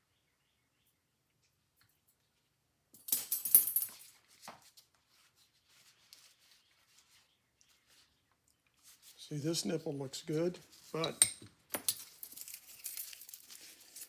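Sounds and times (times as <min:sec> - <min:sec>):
metal parts clattering and clinking: 0:03.0 - 0:04.1, 0:11.0 - 0:14.0.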